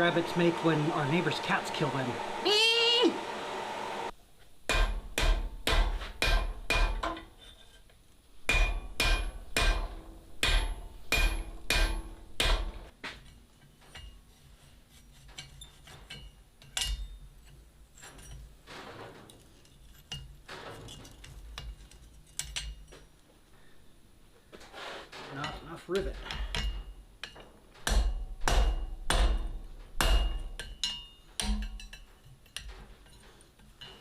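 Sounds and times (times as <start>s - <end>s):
hammer striking steel on anvil: 4.7s - 7.3s, 8.5s - 12.8s, 25.5s - 32.7s.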